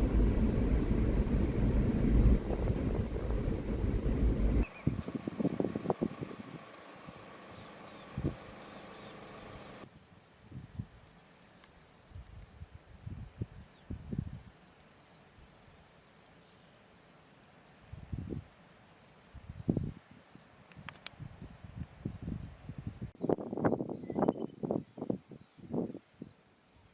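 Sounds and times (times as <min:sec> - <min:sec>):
wind rumbling on microphone: 0:00.0 - 0:06.6, 0:08.1 - 0:08.4, 0:12.2 - 0:14.5, 0:19.4 - 0:20.0, 0:21.2 - 0:26.3.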